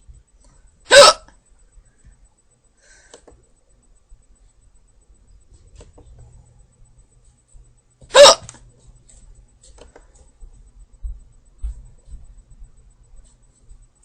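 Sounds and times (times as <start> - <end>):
faint low rumble: 0.0 - 14.0
girl hiccuping: 0.9 - 1.3, 8.1 - 8.6.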